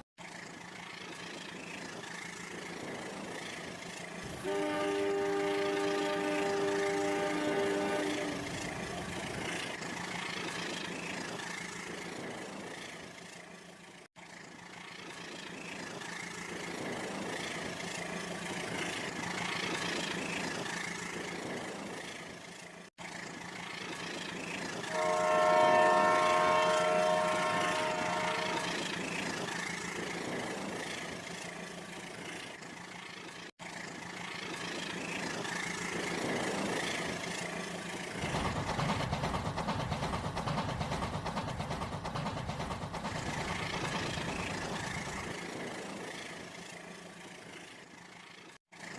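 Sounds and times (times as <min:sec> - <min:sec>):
train rumbling: 0:00.6 - 0:48.6
train horn: 0:04.3 - 0:08.8, 0:24.9 - 0:29.0.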